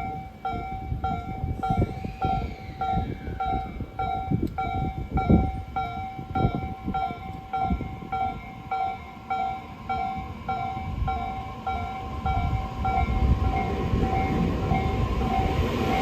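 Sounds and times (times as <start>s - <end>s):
electric train rumbling: 0.0s - 16.0s
level crossing warning bell: 0.0s - 16.0s
whine falling in pitch: 1.4s - 4.4s.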